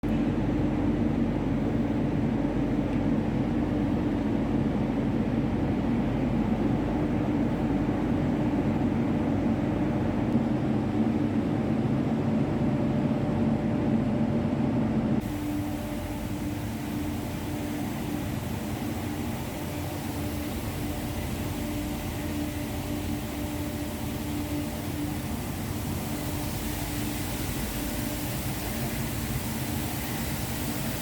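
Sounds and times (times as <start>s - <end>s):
shot blasting machine humming: 15.2s - 31.0s
steady hiss: 15.2s - 31.0s.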